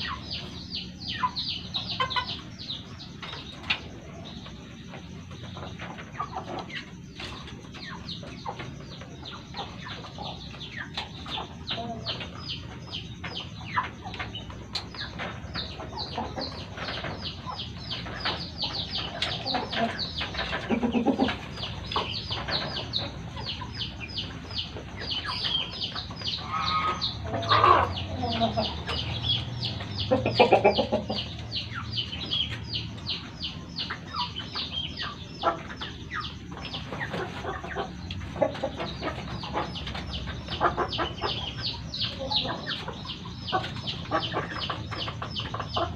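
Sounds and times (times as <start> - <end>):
chickens clucking: 0.0 - 45.9
louder lower chicken calls: 26.3 - 28.9.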